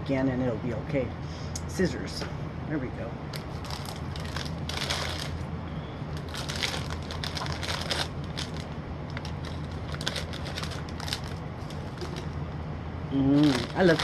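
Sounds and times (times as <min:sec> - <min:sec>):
snack bag crinkling: 0:03.4 - 0:05.4, 0:06.1 - 0:12.4, 0:13.4 - 0:14.0.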